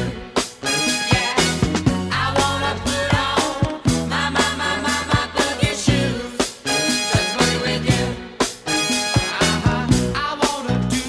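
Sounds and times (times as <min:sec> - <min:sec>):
upbeat music with drums: 0:00.0 - 0:11.0.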